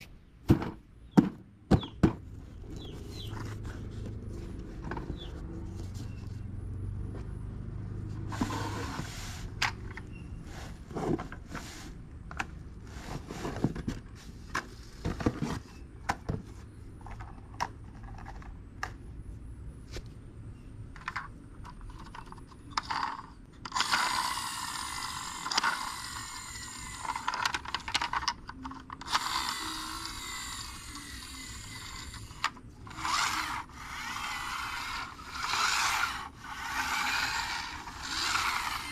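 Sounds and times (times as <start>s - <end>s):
plastic toys clicking and knocking: 17.0s - 19.0s, 20.9s - 38.9s.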